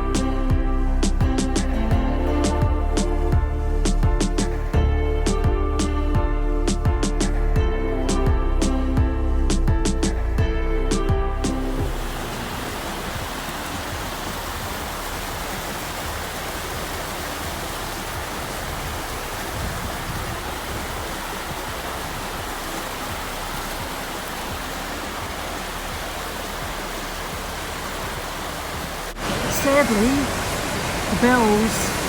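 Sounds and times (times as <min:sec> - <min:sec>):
steady rushing noise: 0:08.1 - 0:32.0.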